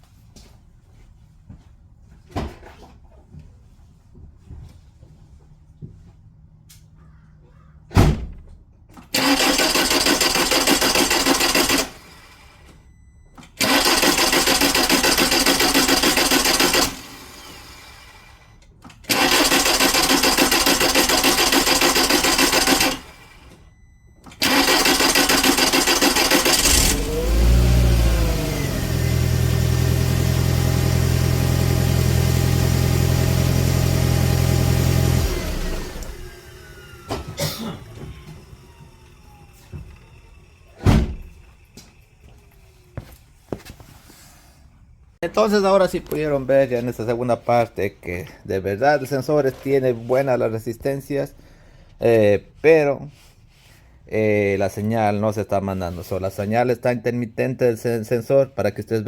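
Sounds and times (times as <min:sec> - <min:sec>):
car starter cranking: 0:09.0 - 0:12.7, 0:13.4 - 0:41.4
car engine idling: 0:24.4 - 0:40.8.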